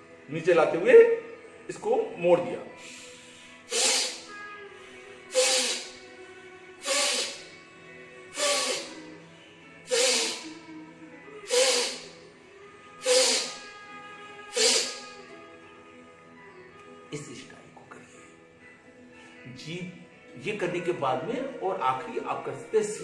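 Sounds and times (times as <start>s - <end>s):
soft background music: 0.0s - 23.0s
man breathing out forcefully: 2.8s - 4.3s, 5.3s - 5.9s, 6.8s - 7.4s, 11.5s - 12.1s, 13.0s - 13.6s, 14.5s - 15.1s.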